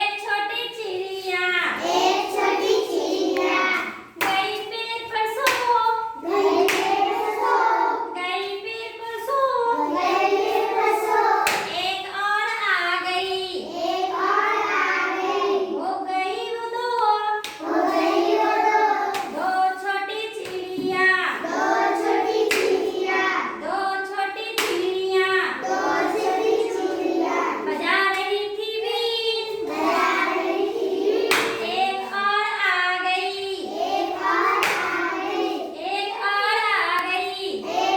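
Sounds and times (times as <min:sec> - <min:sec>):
hand claps: 0:06.6 - 0:07.0.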